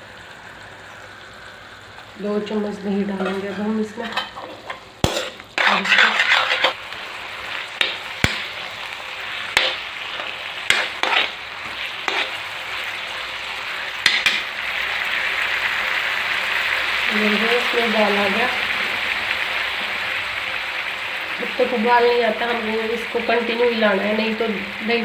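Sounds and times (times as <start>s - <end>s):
food sizzling in a pan: 0.0s - 25.0s
utensil scraping and clinking pan: 3.2s - 6.8s.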